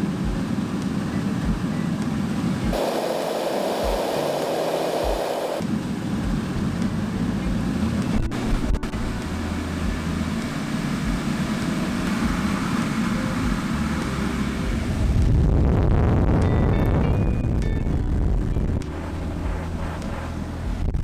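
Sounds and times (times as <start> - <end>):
blower rushing air: 2.4 - 16.3.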